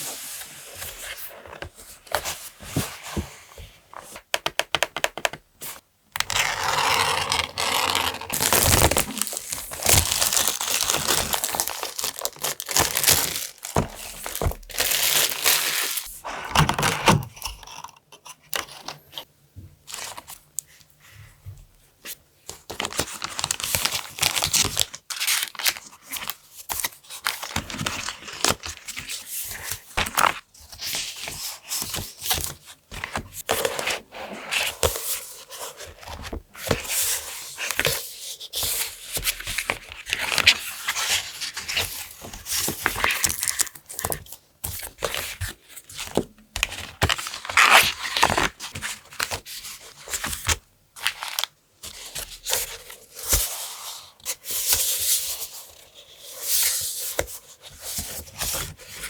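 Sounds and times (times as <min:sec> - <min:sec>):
paper crinkling and rustling: 0:06.3 - 0:17.2.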